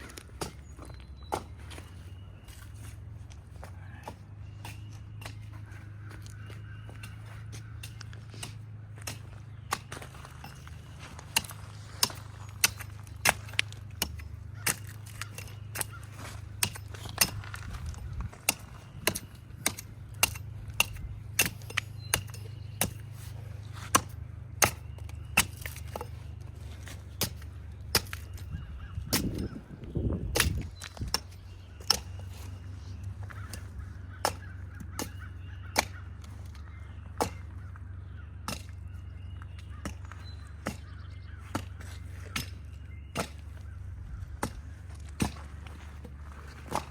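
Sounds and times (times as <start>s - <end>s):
steady low hum: 0.0s - 46.9s
axe chopping into tree bark: 29.0s - 29.6s, 30.2s - 32.2s, 37.2s - 37.6s, 39.6s - 46.9s.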